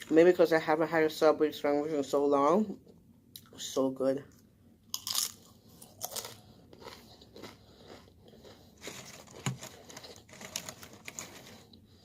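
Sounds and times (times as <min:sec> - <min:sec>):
person chewing crunchy food: 0:04.9 - 0:12.0.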